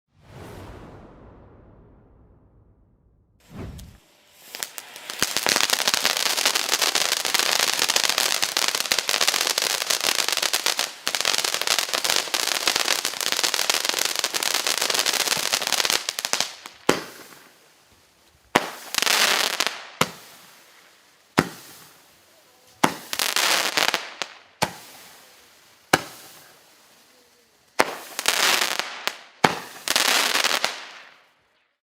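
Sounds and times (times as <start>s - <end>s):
crackling bursting stars: 0.1s - 18.9s
firework launch pops: 3.4s - 5.8s, 16.8s - 17.5s, 21.4s - 22.0s, 22.8s - 23.2s, 24.6s - 25.0s, 25.9s - 26.5s, 29.4s - 31.0s
firework fountain crackling hiss: 3.6s - 31.2s.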